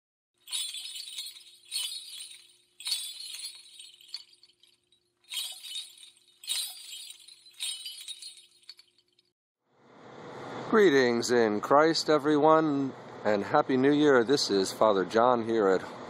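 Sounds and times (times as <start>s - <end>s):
glassy chiming clinks: 0.4s - 9.3s.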